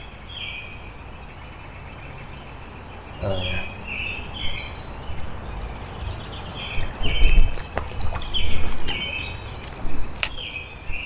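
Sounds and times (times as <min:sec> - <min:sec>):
birds chirping: 0:00.0 - 0:11.0
outdoor background noise: 0:00.0 - 0:11.0
sharp clicks: 0:06.7 - 0:10.5.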